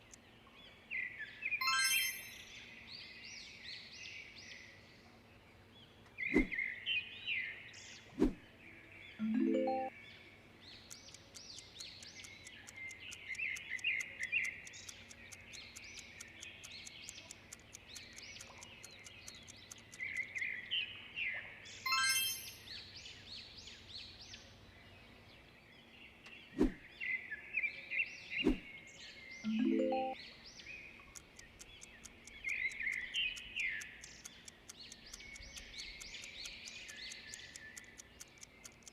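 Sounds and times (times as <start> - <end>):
birdsong chirps: 0.0 - 38.9
bright chime: 1.6 - 2.6, 9.2 - 9.9, 21.9 - 22.8, 29.5 - 30.2
fast even ticking: 10.8 - 20.5, 31.0 - 38.9
sharp click: 10.8 - 20.5, 31.1 - 38.9.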